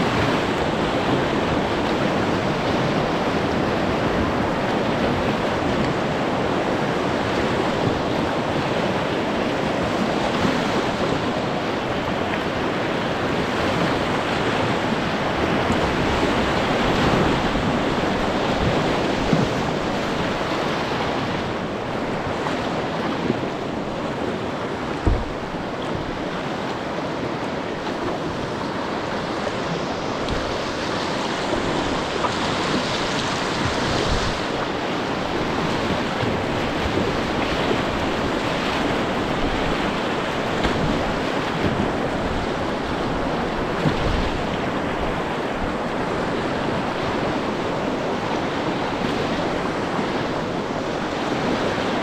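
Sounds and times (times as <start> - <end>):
river water rushing over rocks: 0.0 - 52.0
wind buffeting microphone: 0.0 - 52.0
low thumps: 24.9 - 25.7.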